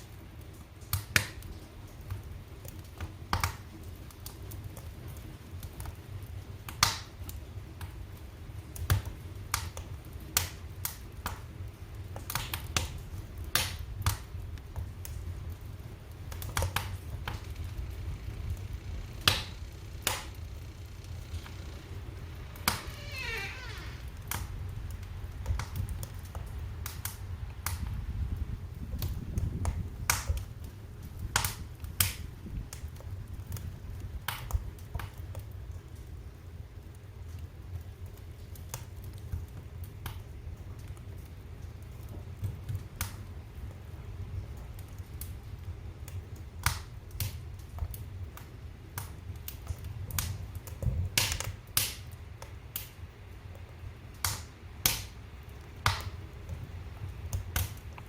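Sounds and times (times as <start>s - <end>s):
wood fire crackling: 0.0s - 58.0s
low rumble: 16.9s - 25.4s.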